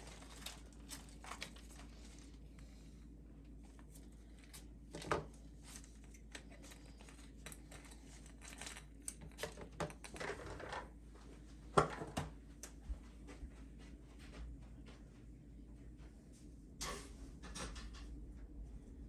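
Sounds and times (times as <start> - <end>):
crinkling: 0.0 - 2.6.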